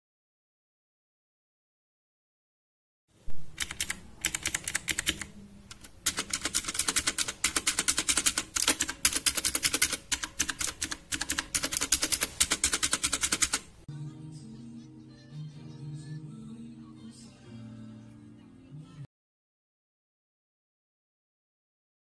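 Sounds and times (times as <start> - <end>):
mechanical keyboard typing: 3.6 - 13.7.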